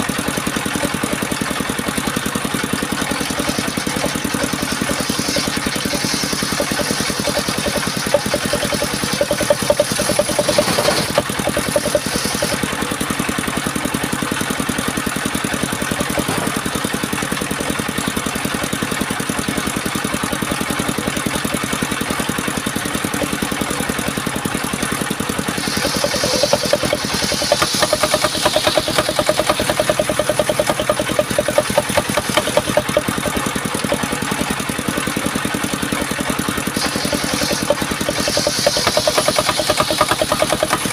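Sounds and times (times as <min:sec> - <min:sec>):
engine-driven sawmill running: 0:00.0 - 0:40.9
circular saw cutting log: 0:00.6 - 0:13.2, 0:22.6 - 0:40.9.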